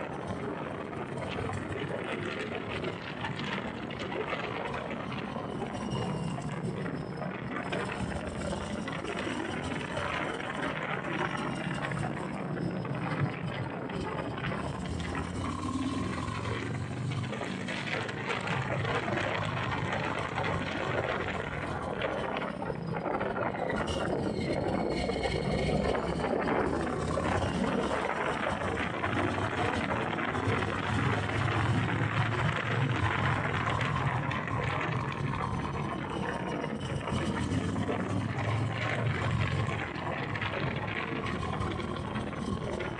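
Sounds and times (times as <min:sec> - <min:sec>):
wind noise on microphone: 0:00.0 - 0:42.9.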